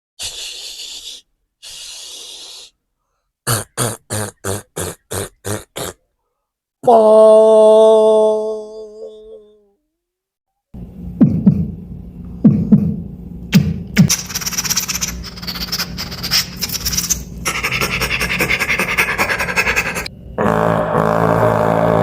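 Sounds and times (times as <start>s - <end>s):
droning low hum: 10.8s - 22.0s
beatbox kick-drum thumps: 11.2s - 11.8s, 12.4s - 20.1s
beatbox scratch clicks and hiss: 13.5s - 20.1s
rapid buzzing rattle: 14.1s - 20.1s.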